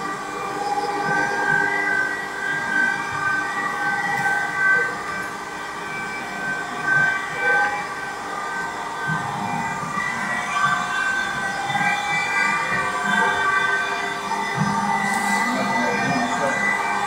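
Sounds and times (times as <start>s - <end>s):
machining centre whining: 0.0s - 17.0s.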